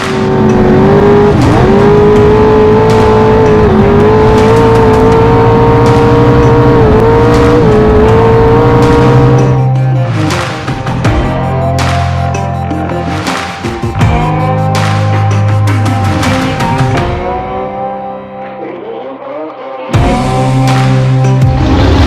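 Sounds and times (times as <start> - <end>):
boat engine at high revs: 0.0 - 9.7.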